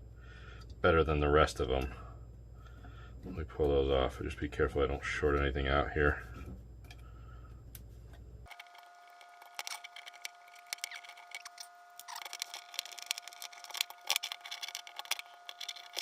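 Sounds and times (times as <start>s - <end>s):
faint high whine: 0.0s - 16.0s
battery cells clicking and rattling: 8.5s - 16.0s.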